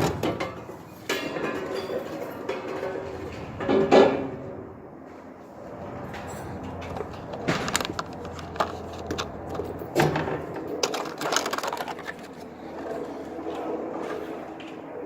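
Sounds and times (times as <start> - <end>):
metal parts clicking and clattering: 0.0 - 3.8, 6.1 - 13.4.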